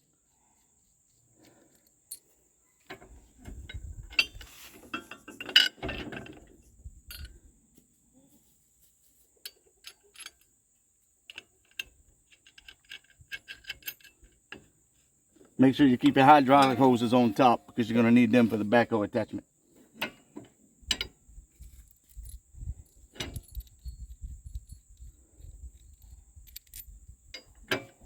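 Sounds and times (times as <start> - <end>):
metal clanks and clicks: 3.7 - 6.5, 16.0 - 17.7, 20.0 - 21.2.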